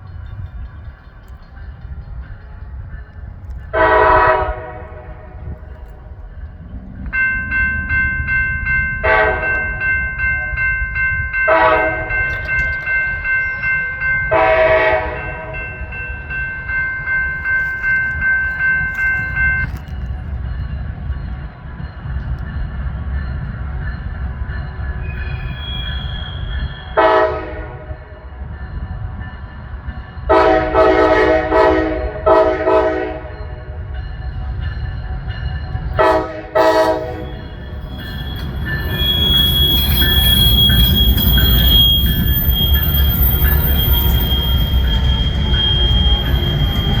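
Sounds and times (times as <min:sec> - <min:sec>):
low rumble of train: 0:00.0 - 0:47.0
locomotive air horn blasts: 0:03.8 - 0:05.6, 0:09.0 - 0:09.7, 0:11.5 - 0:12.4, 0:14.3 - 0:15.6, 0:27.0 - 0:27.8, 0:30.3 - 0:33.3, 0:36.0 - 0:37.7
high wheel squeal: 0:25.0 - 0:27.0, 0:36.9 - 0:47.0.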